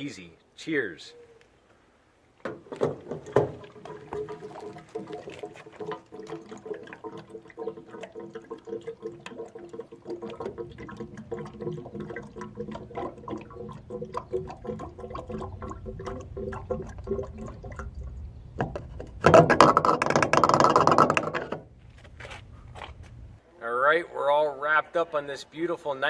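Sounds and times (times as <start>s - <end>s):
liquid pouring and gurgling: 2.7s - 21.6s.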